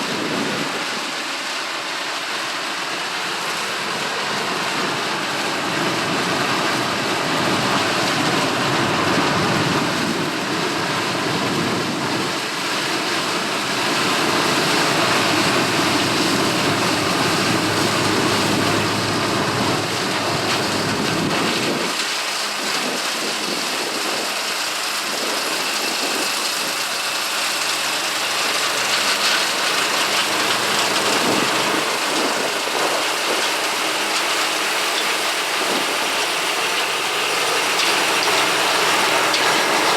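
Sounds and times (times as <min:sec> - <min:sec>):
diesel engine rumble: 0:00.0 - 0:39.9
combine threshing: 0:12.7 - 0:24.0.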